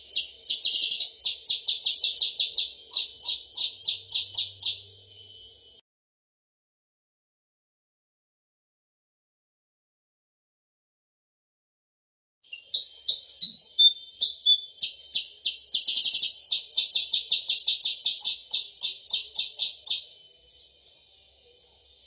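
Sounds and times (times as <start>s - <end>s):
bird chirping: 0.0s - 5.5s, 12.4s - 21.6s.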